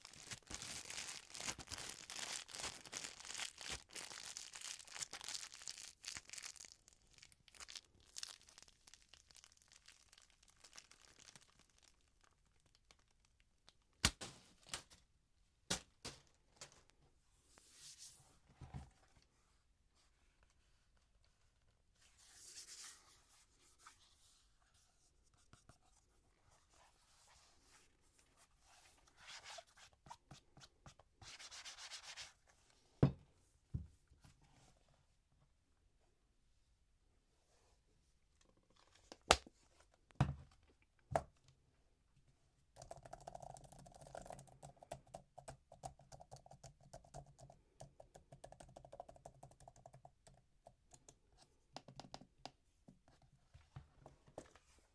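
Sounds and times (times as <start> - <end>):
packaging rustling and crinkling: 0.0 - 13.4.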